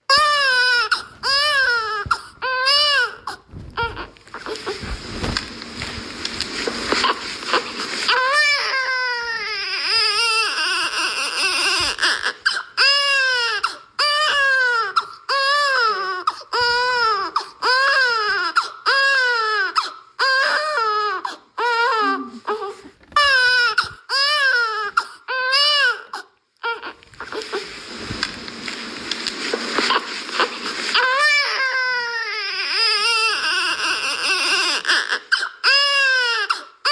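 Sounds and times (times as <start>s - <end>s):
infant crying: 0.1s - 4.8s, 7.0s - 27.7s, 29.8s - 36.9s.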